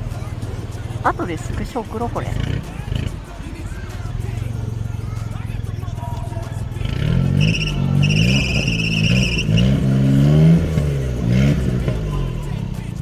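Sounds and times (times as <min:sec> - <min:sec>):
off-road vehicle engine revving: 0:00.0 - 0:01.0, 0:02.3 - 0:13.0.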